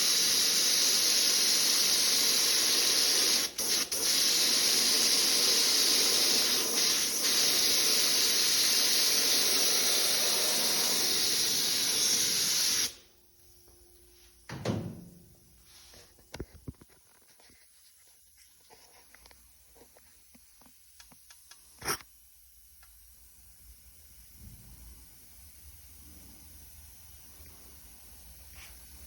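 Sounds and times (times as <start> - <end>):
paint spray gun hissing: 0.0 - 13.0
thump: 14.5 - 15.2.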